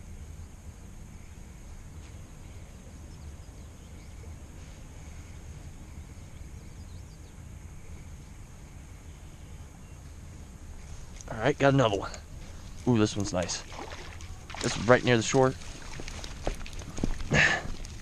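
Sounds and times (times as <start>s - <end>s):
steady high-pitched hiss: 0.0s - 18.0s
wind rumble on microphone: 12.2s - 18.0s.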